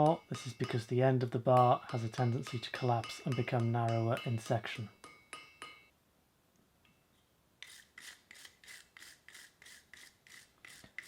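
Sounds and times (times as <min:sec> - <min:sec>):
wire brush scrubbing metal bar: 0:07.6 - 0:11.0.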